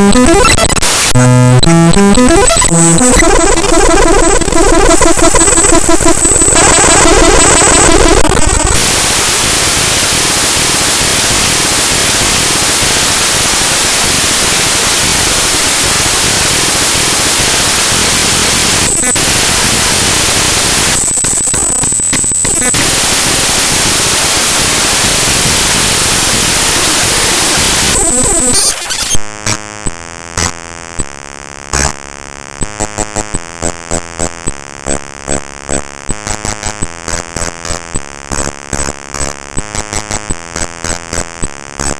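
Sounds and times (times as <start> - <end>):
buzzy stepping tones: 0.0 - 8.9
harsh static: 0.0 - 41.9.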